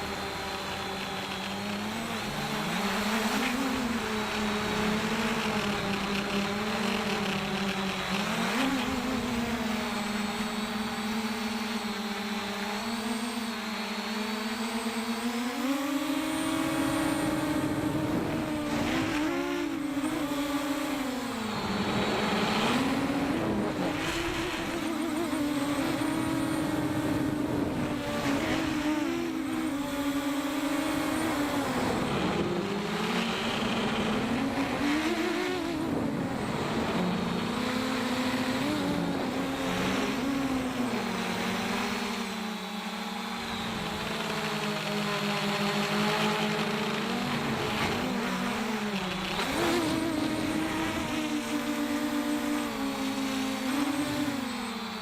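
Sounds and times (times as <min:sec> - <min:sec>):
drone motors whining: 0:00.0 - 0:55.0.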